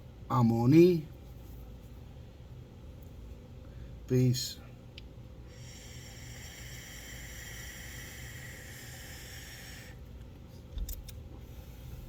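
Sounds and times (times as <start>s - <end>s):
vape hissing: 5.5s - 10.0s.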